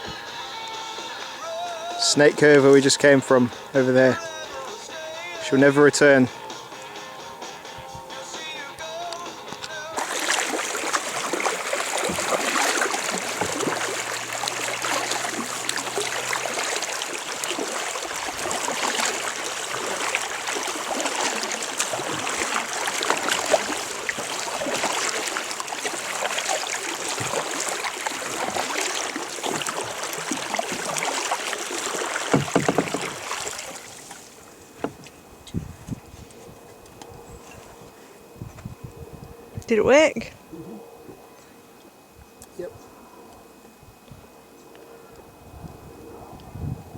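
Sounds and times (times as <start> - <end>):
paddle splashing water: 9.6 - 35.4.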